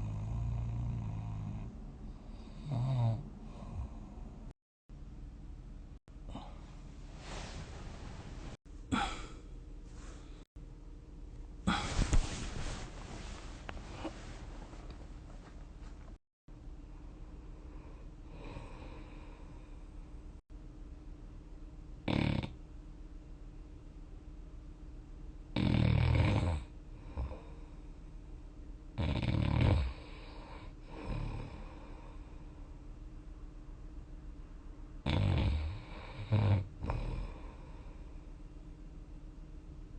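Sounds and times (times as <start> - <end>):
person snoring loudly: 0.0 - 1.7, 2.3 - 4.3, 22.1 - 22.6, 25.6 - 27.4, 29.0 - 31.8, 35.0 - 37.7
soft breathy breath: 6.2 - 10.5.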